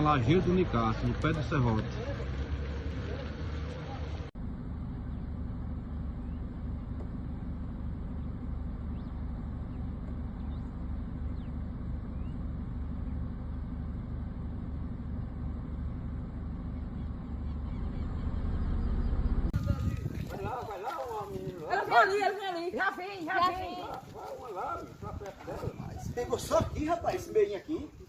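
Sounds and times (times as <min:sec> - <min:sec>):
wind buffeting microphone: 0:17.8 - 0:28.0.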